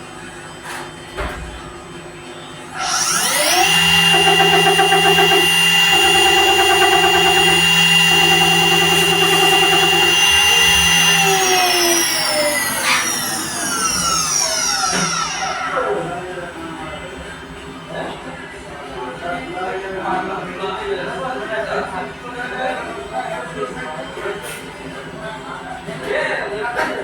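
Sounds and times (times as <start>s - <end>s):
machine spindle whining: 2.7s - 17.1s
tool cutting rhythmically: 2.8s - 16.5s.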